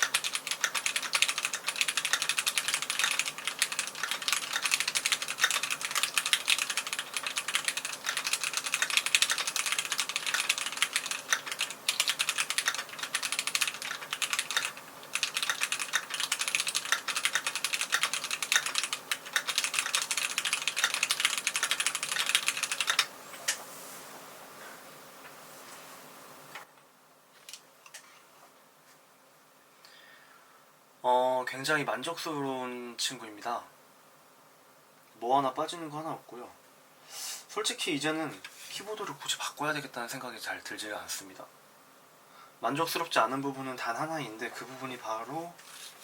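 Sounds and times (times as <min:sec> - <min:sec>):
mechanical keyboard typing: 0:00.0 - 0:23.1.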